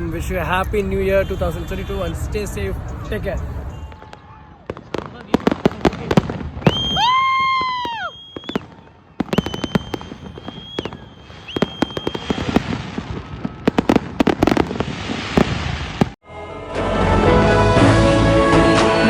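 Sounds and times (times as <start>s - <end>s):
fireworks cracks and bangs: 3.7s - 16.2s
shrill firework whistles: 6.6s - 14.6s.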